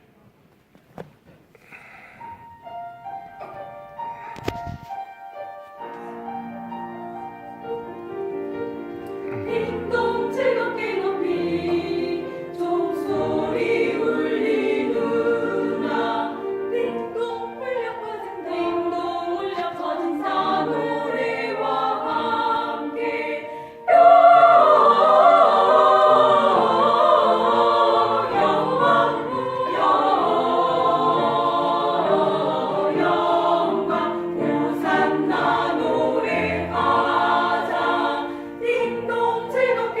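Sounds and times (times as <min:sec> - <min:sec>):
vocal ensemble singing in harmony: 0:09.1 - 0:40.0.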